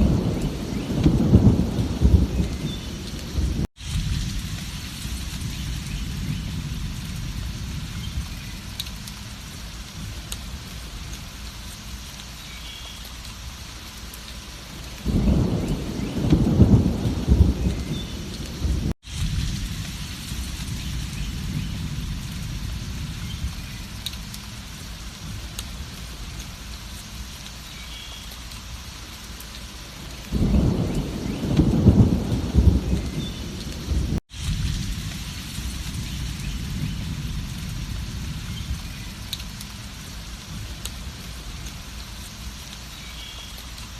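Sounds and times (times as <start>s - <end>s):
rolling thunder: 0.0s - 8.8s, 15.0s - 24.3s, 30.2s - 41.1s
heavy rain: 0.0s - 43.9s.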